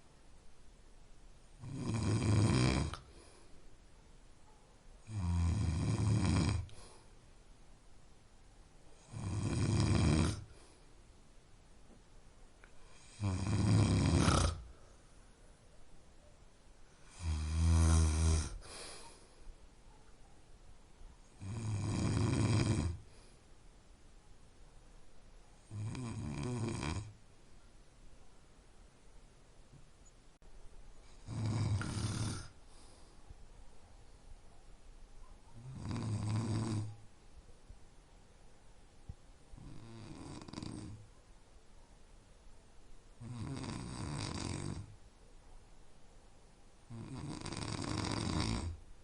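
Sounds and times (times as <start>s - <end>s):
person snoring: 1.6s - 3.2s, 5.1s - 7.0s, 9.0s - 10.6s, 12.9s - 14.7s, 17.0s - 19.0s, 21.4s - 23.1s, 25.7s - 27.1s, 31.1s - 32.6s, 35.7s - 36.9s, 39.6s - 41.0s, 43.2s - 44.9s, 46.9s - 48.8s
quiet breathing: 2.6s - 7.7s, 8.8s - 11.3s, 12.6s - 20.4s, 21.1s - 23.8s, 30.9s - 34.6s.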